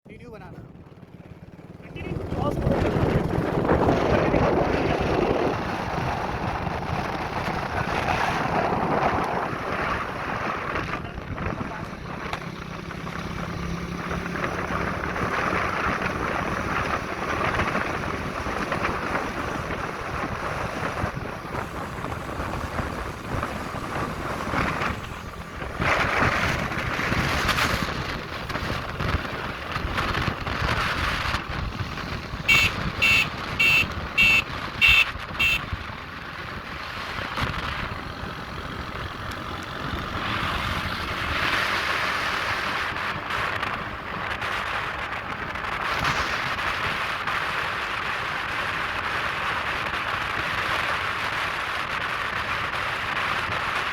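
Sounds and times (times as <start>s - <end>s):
moving vehicle rumble: 0.0s - 53.9s
wind noise on microphone: 1.8s - 53.9s
short high-pitched beeps: 32.5s - 35.7s.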